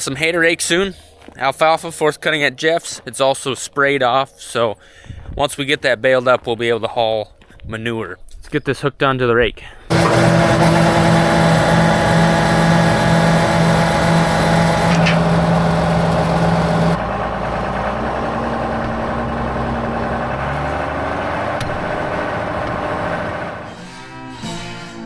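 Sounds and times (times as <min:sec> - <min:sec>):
tractor engine running: 0:09.9 - 0:23.8.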